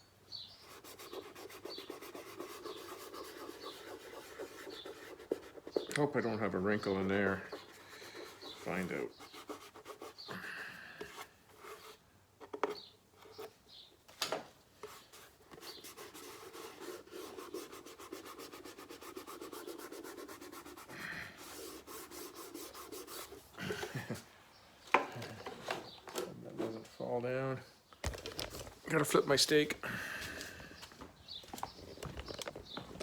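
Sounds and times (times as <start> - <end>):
rubbing decal onto panel: 0.6 - 10.5, 14.8 - 24.2.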